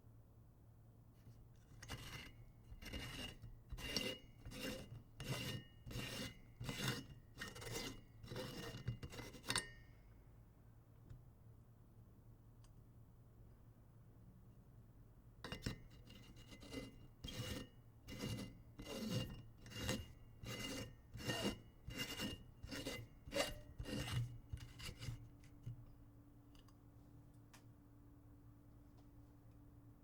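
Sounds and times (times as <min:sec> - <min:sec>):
faint glassy ring: 0:08.8 - 0:10.2.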